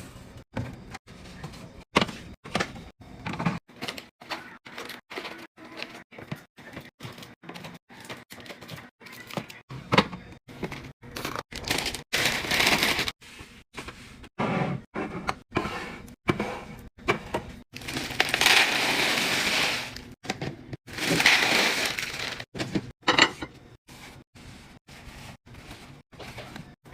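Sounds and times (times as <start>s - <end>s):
packaging rustling and crinkling: 11.2s - 13.2s.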